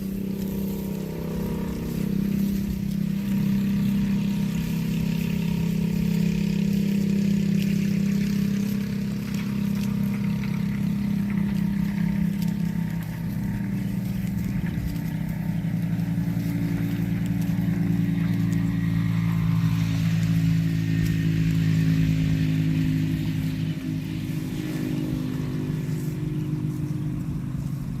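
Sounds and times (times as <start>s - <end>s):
engine running steadily: 0.0s - 28.0s.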